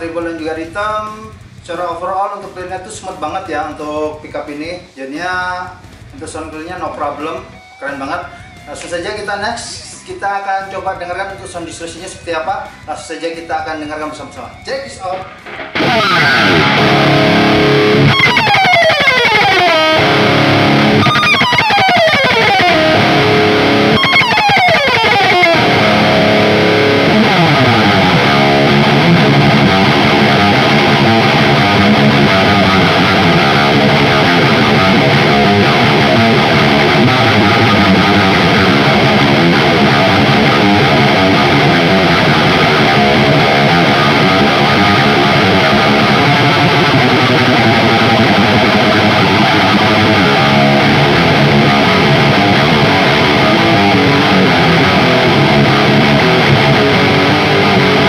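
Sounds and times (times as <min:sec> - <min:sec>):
distorted electric guitar: 0:00.0 - 0:58.0.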